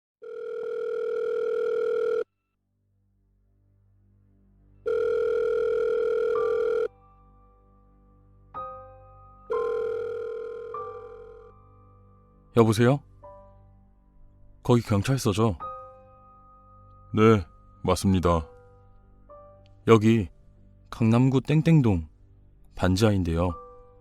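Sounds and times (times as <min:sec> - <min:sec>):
quiet background music: 0:00.2 - 0:24.0
telephone ringback beeps: 0:04.9 - 0:06.9.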